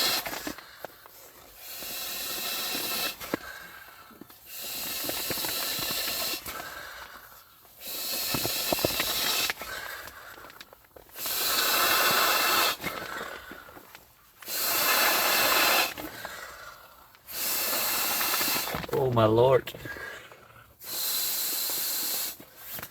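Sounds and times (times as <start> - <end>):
quiet breaths: 0.0 - 22.9
person blowing into valve: 1.6 - 3.3, 7.8 - 9.8, 11.1 - 13.0, 14.4 - 16.2, 17.3 - 19.0, 20.8 - 22.8.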